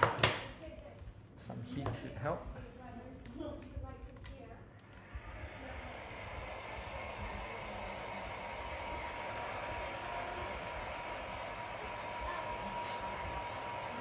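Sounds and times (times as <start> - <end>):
hot-air blower hissing: 4.9 - 14.0.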